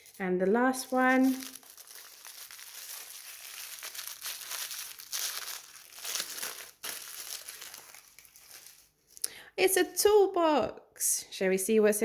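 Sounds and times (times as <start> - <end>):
wrapping crinkling and tearing: 0.0 - 9.3.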